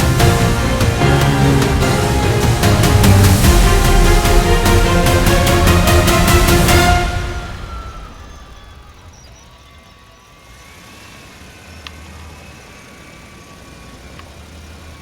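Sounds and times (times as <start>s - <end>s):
music: 0.0s - 8.3s
faint whining tones: 7.0s - 15.0s
small motor humming: 8.3s - 15.0s.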